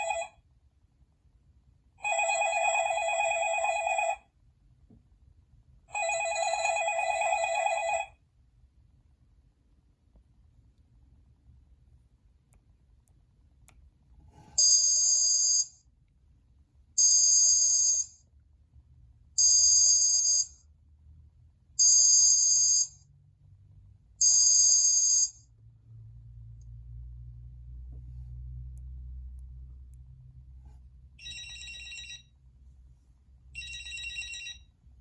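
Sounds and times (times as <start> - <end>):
phone ringtone high electronic rings: 0.0 - 0.4, 2.0 - 4.2, 5.9 - 8.2, 31.2 - 32.4, 33.5 - 34.8.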